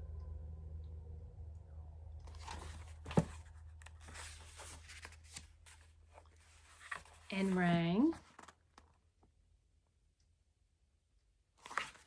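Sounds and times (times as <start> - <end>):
low steady hum: 0.0 - 8.4
paper rustling and crinkling: 2.3 - 8.9, 11.6 - 12.0.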